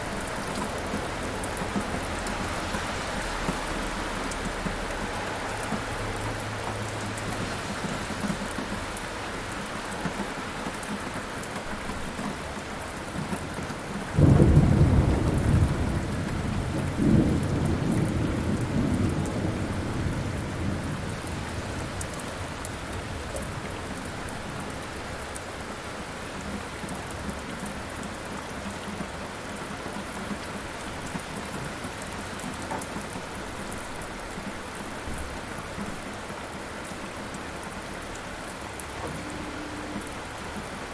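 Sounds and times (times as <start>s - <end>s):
steady rainfall: 0.0s - 40.9s
thunder rumbling: 14.1s - 24.6s.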